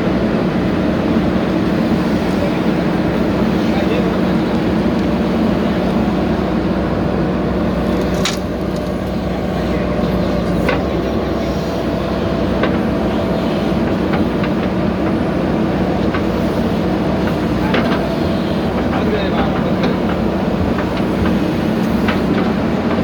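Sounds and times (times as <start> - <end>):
diesel engine running: 0.0 - 23.0.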